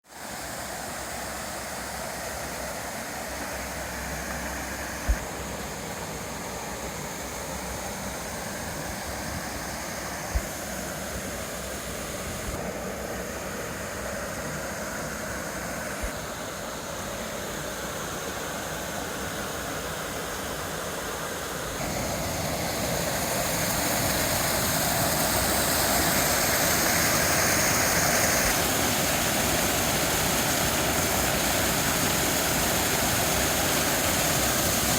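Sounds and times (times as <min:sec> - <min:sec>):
waterfall rushing: 0:21.8 - 0:34.9.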